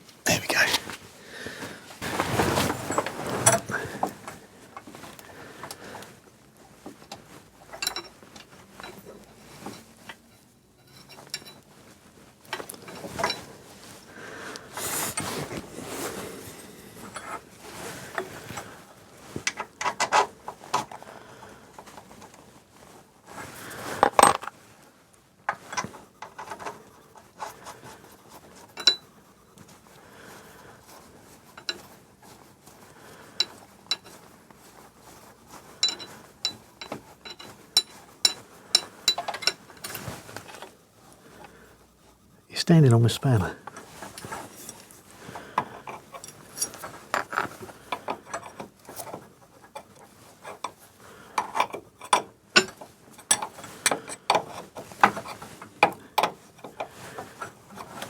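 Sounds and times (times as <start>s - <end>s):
hand tools and steel clinking: 2.1s - 5.8s, 7.0s - 11.7s, 12.5s - 14.1s, 17.0s - 17.5s, 25.5s - 27.8s, 28.6s - 29.1s, 31.5s - 31.9s, 33.4s - 34.3s, 35.2s - 40.8s, 43.3s - 58.0s.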